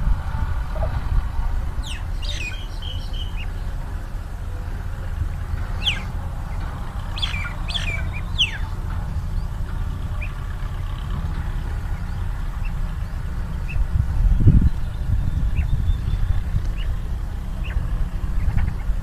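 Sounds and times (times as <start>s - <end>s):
low rumble: 0.0s - 19.0s
quail chirping: 1.8s - 3.6s, 5.6s - 8.8s, 17.6s - 17.8s, 18.4s - 18.9s.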